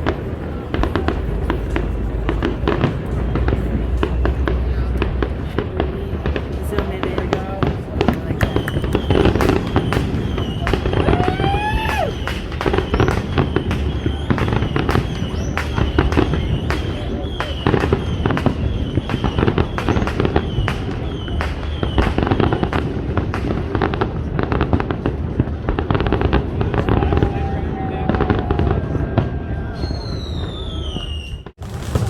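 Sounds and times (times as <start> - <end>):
fireworks whistles: 0.0 - 5.6, 8.3 - 22.9, 29.2 - 32.0
deep rumble: 0.0 - 13.1
fireworks bangs and crackles: 0.0 - 32.0.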